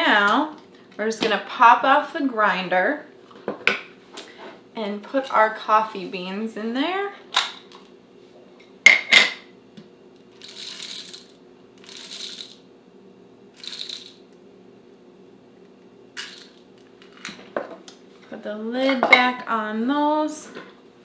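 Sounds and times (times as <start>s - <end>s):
coffee beans rattling into grinder: 10.4s - 12.6s, 13.6s - 14.2s, 16.2s - 17.2s.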